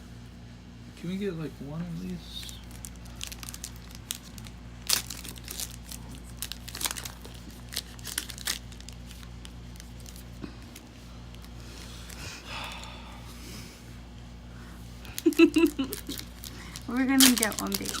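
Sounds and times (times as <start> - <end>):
steady low hum: 0.0 - 18.0
foil wrappers crinkling and tearing: 2.1 - 12.7, 15.0 - 18.0.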